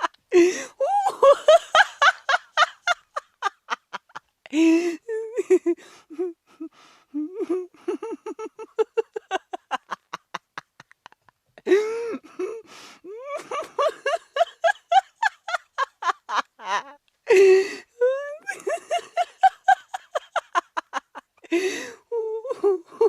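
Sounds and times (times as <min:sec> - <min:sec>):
woman laughing hard: 0:00.0 - 0:23.0
gasping breath: 0:00.3 - 0:00.8, 0:04.5 - 0:05.1, 0:11.6 - 0:13.2, 0:17.3 - 0:18.0, 0:21.4 - 0:22.1.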